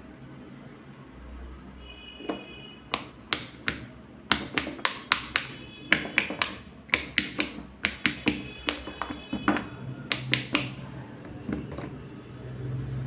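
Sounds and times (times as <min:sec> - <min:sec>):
fidget toy bubbles popping: 0:02.3 - 0:10.8.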